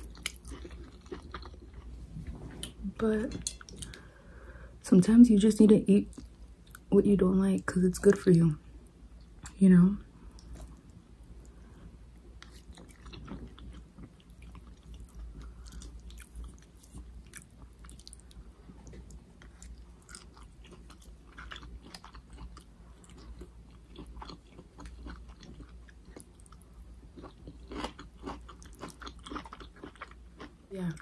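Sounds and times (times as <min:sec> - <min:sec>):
person chewing food: 0:00.0 - 0:02.8, 0:10.3 - 0:31.0.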